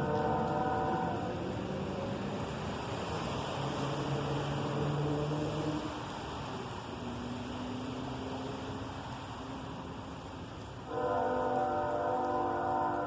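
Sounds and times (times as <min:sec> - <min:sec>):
locomotive air horn: 0:00.0 - 0:01.6, 0:10.8 - 0:13.0
freight train rumbling by: 0:00.0 - 0:07.7, 0:08.6 - 0:13.0.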